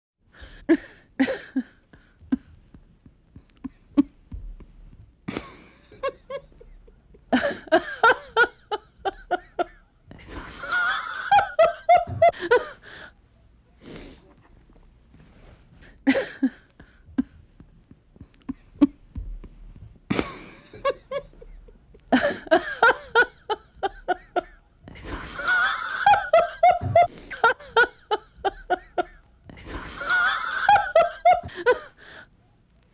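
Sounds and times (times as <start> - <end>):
woman laughing: 0.7 - 2.8, 5.3 - 13.1, 16.0 - 19.2, 20.1 - 32.2
short breaths: 13.8 - 14.4.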